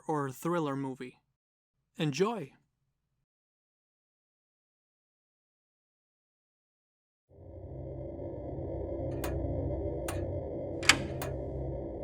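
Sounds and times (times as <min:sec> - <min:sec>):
low creepy ambient drone: 0:07.3 - 0:12.0.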